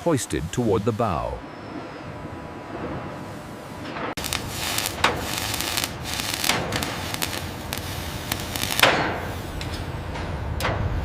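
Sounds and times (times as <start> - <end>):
steady low rumble: 0.0 - 11.0.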